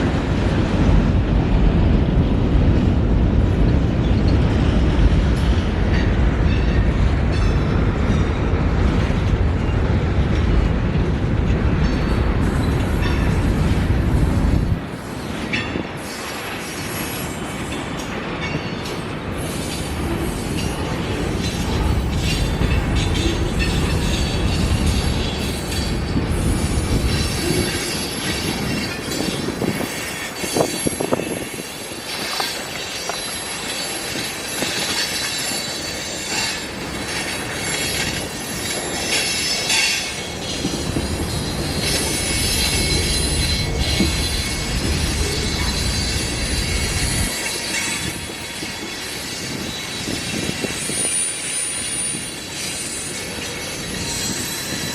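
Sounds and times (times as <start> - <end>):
train clicks: 0.0 - 54.9
train rumbling past: 0.0 - 54.9
wheels squealing on rails: 11.8 - 54.9.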